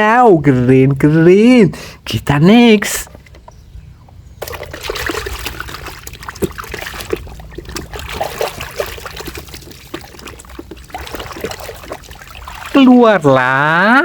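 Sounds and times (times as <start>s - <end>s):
water sloshing and splashing: 3.0s - 13.8s.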